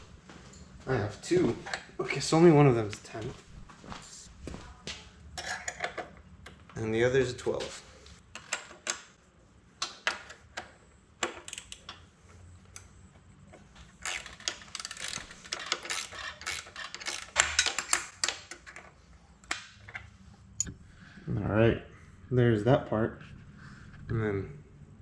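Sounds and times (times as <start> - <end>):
ratchet wrench clicking: 14.0 - 18.4.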